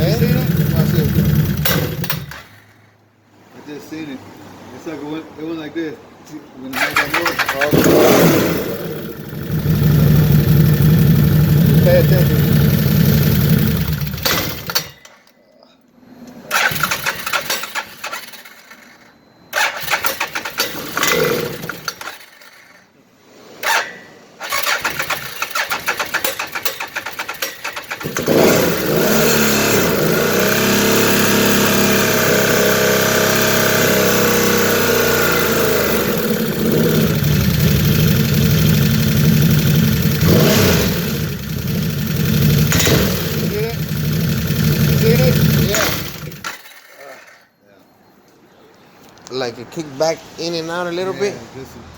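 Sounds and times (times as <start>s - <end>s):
clutch kicking in and out: 0.0s - 2.8s, 6.8s - 15.4s, 16.2s - 22.8s, 23.6s - 47.2s
atv engine cranking and revving: 0.0s - 3.0s, 6.7s - 15.3s, 16.2s - 23.0s, 23.6s - 47.5s.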